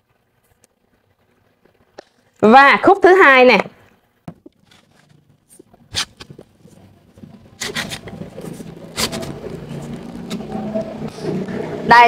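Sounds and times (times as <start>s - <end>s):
tube sliding and scraping: 7.6s - 10.4s.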